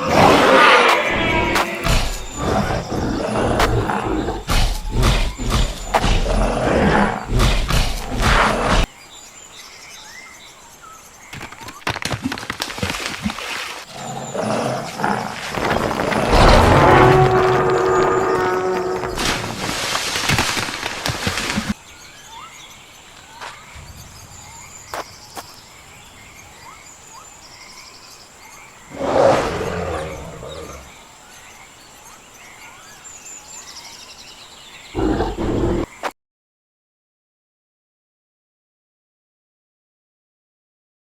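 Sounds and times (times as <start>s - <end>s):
loud animal roar: 0.0s - 8.9s, 13.9s - 19.8s, 28.9s - 30.9s, 35.0s - 35.9s
birds chirping: 0.0s - 12.0s, 13.8s - 36.1s.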